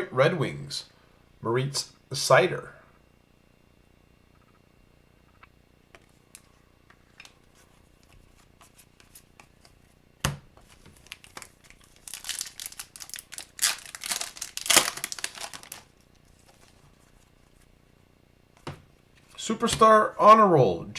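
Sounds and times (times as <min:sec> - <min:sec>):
foil wrapper tearing and crinkling: 0:10.7 - 0:16.8.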